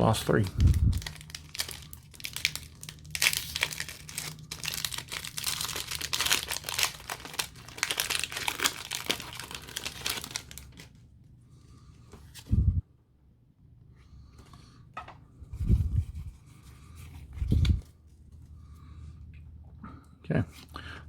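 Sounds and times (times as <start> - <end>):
foil wrapper crinkling: 0.3 - 11.0.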